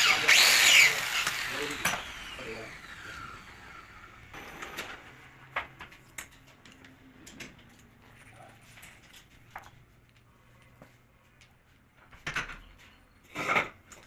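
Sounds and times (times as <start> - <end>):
power tool spinning down: 0.0 - 5.1.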